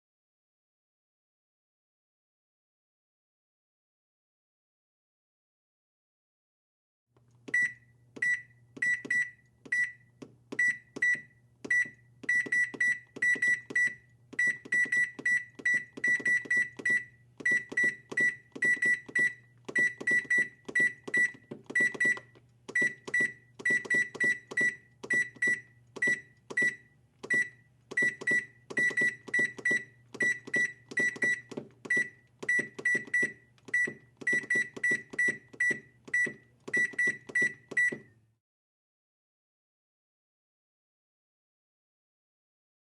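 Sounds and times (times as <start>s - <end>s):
keypad button beeps: 7.5s - 38.2s.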